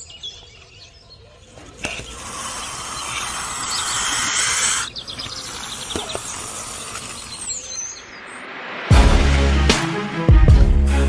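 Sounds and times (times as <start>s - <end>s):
music with heavy bass and drums: 8.9s - 11.0s.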